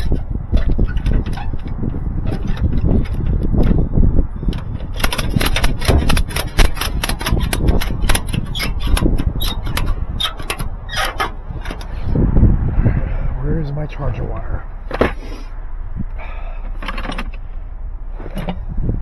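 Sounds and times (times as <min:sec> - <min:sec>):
low rumble: 0:00.0 - 0:19.0
hard objects clicking and clattering: 0:04.5 - 0:11.9.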